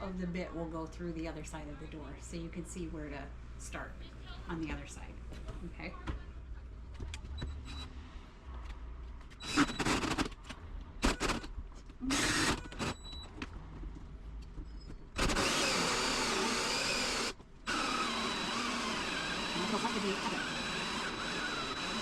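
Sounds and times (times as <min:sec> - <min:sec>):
power drill with hole saw cutting: 0:09.4 - 0:10.3, 0:11.0 - 0:11.5, 0:12.1 - 0:13.0, 0:15.2 - 0:22.0.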